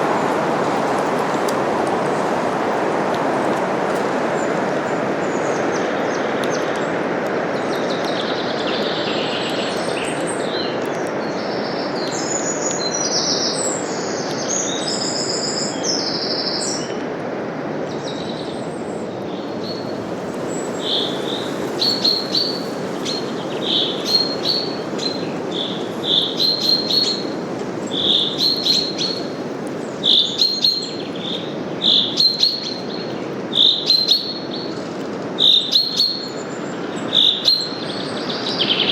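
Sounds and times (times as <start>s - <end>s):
wind through leaves: 0.0s - 38.9s
songbirds singing: 7.6s - 17.0s, 17.8s - 38.9s.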